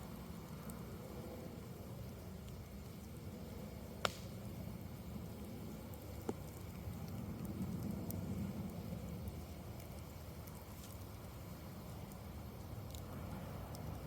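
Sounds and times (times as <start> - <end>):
campfire low rumble: 0.0 - 14.0
faint crackles: 0.0 - 14.0
fire sharp pops: 4.0 - 4.6.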